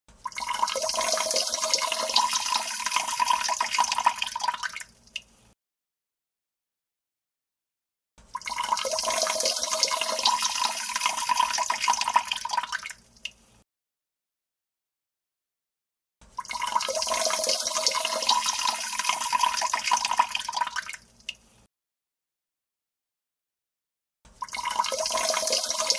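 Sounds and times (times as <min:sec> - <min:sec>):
person urinating into toilet: 0:00.2 - 0:05.1, 0:08.4 - 0:13.4, 0:16.4 - 0:21.4, 0:24.4 - 0:25.9.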